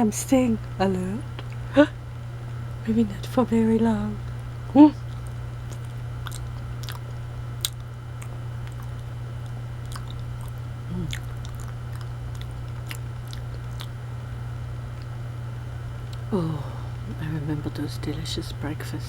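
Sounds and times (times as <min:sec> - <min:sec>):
steady low hum: 0:00.0 - 0:19.0
person chewing banana: 0:05.0 - 0:15.2, 0:16.0 - 0:16.3.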